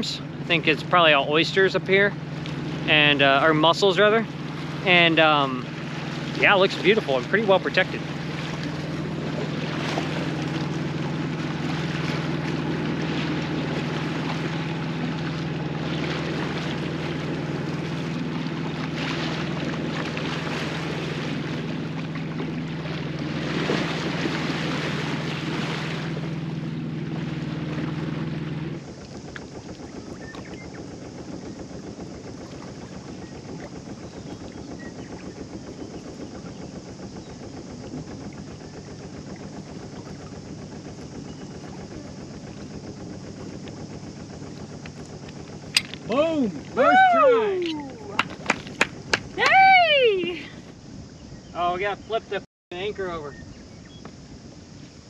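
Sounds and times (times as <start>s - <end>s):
boat engine running: 0.0s - 55.0s
wind and water noise: 0.0s - 55.0s.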